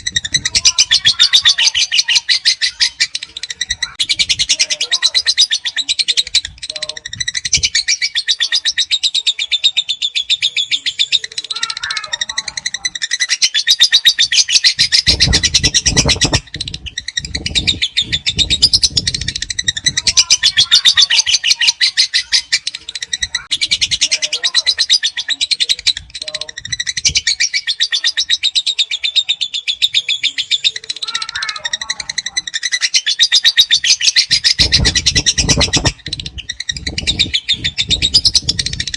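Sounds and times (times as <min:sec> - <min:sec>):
lovebird chattering trill: 0:00.0 - 0:38.9
low thumps: 0:34.3 - 0:38.9.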